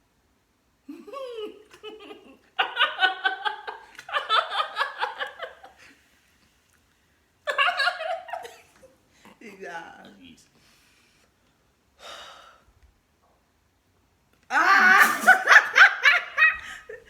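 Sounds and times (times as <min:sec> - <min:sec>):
hearty laughter: 0:00.9 - 0:05.9, 0:07.5 - 0:08.9.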